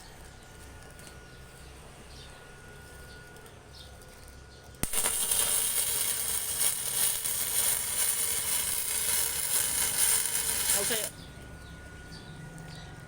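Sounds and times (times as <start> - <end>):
welding arc crackling hiss: 4.8 - 11.1.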